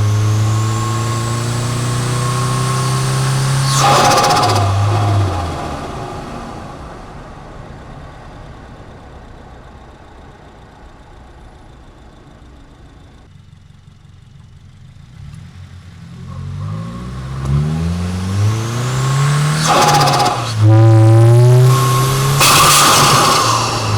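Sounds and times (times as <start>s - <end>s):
car engine revving: 0.0s - 7.8s, 14.9s - 23.9s.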